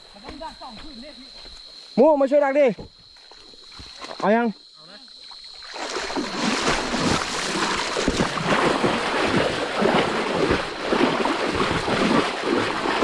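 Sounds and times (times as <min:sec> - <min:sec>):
water splashing and churning: 0:05.2 - 0:13.0.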